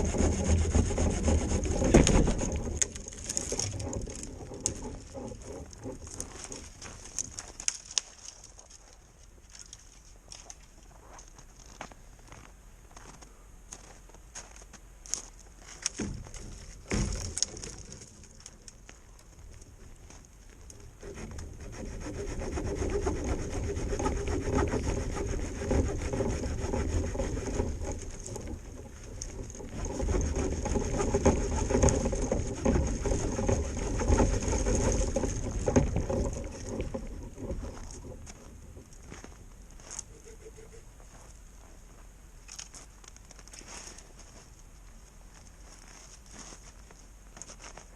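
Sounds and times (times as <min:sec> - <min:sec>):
saw rasping through wood: 0:00.0 - 0:05.8, 0:21.0 - 0:36.8.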